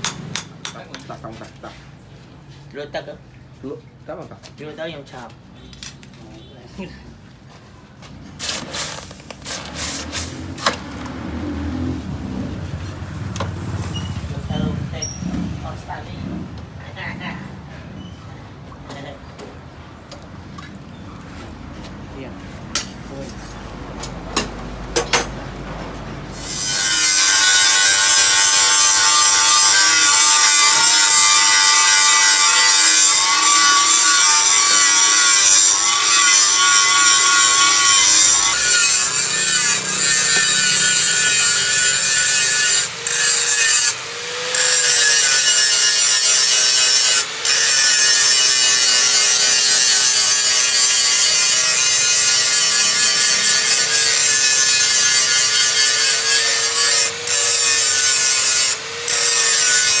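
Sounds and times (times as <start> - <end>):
power tool grinding knife: 26.3 - 60.0.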